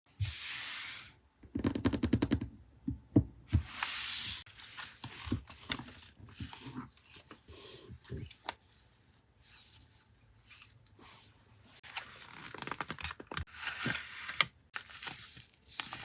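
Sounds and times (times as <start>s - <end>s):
paper rustling and tearing: 11.8s - 16.0s.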